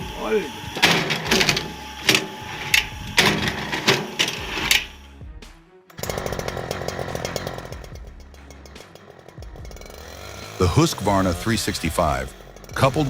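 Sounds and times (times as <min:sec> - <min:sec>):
chainsaw running: 0:00.0 - 0:13.0.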